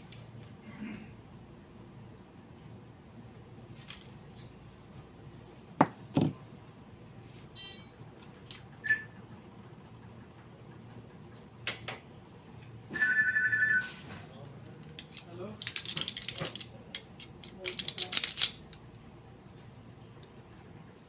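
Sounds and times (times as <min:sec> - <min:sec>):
fast two-tone electronic beep: 0:12.9 - 0:14.0
clicks of things handled: 0:14.4 - 0:18.8.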